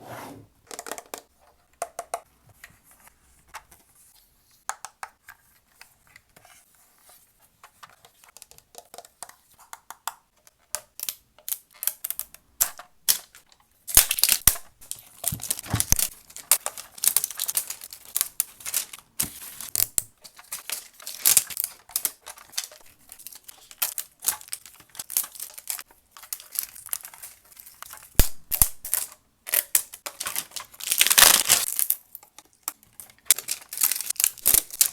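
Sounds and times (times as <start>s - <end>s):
toy packaging rustling and tearing: 13.1s - 34.9s.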